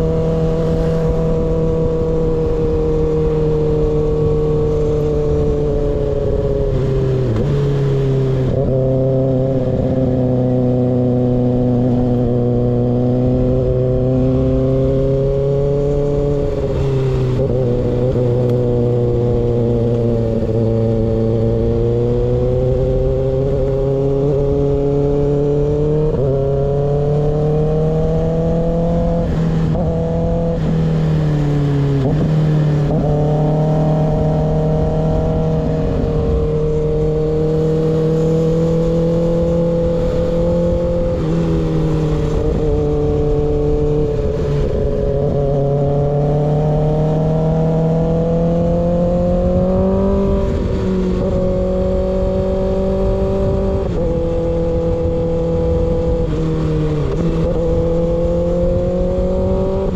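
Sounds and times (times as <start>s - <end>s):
motorcycle engine at mid revs: 0.0s - 59.9s
wind rush: 0.0s - 59.9s.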